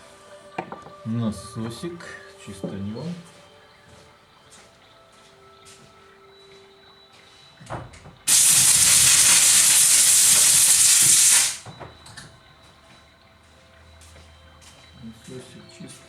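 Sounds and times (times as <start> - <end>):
light knocks: 0.6 - 1.0
pressurised cleaning jet hissing: 8.3 - 11.6.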